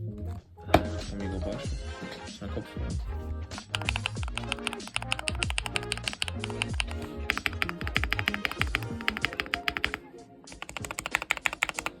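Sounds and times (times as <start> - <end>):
background music: 0.0 - 12.0
rapid mechanical keyboard typing: 3.5 - 12.0.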